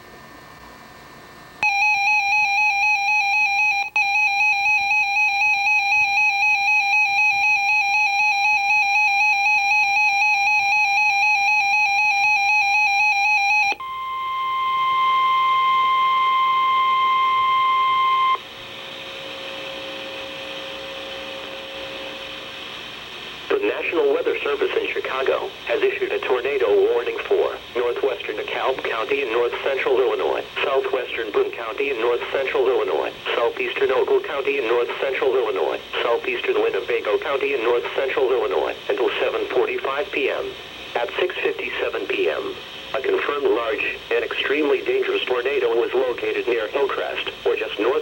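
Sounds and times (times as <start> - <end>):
steady single-pitch alarm tone: 1.6 - 23.0
radio hiss: 14.0 - 48.0.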